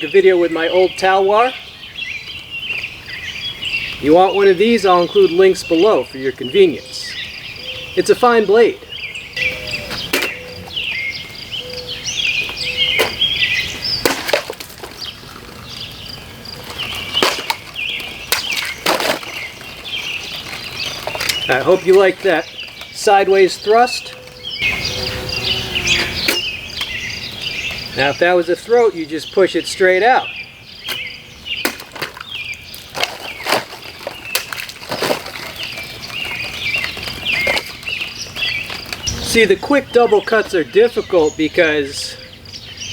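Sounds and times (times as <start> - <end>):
birds chirping: 0.0 - 42.9
knife slashing plastic bottles: 14.0 - 15.1, 17.0 - 21.5, 31.6 - 39.4.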